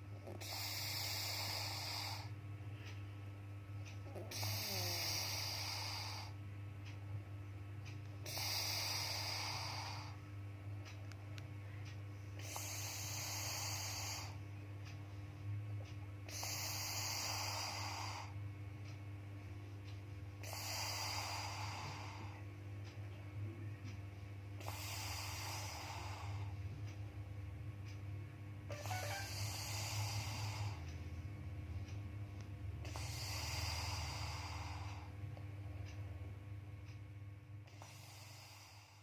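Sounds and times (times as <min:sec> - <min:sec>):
steady low hum: 0:00.0 - 0:39.0
man snoring: 0:00.3 - 0:02.3, 0:04.1 - 0:06.3, 0:08.3 - 0:10.2, 0:12.4 - 0:14.4, 0:16.3 - 0:18.3, 0:20.4 - 0:22.4, 0:24.6 - 0:26.5, 0:28.8 - 0:30.8, 0:32.8 - 0:35.1.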